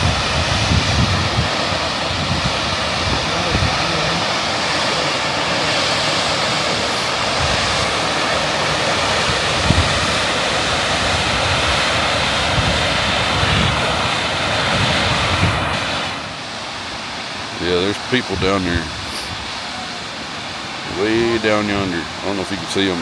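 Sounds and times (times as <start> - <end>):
wind buffeting microphone: 0.0 - 16.4
waterfall roaring: 0.0 - 23.0.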